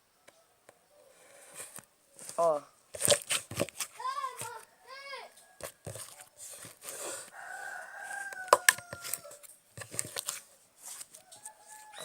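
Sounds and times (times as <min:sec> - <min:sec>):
rooster crowing: 0:07.2 - 0:09.5, 0:11.2 - 0:12.0.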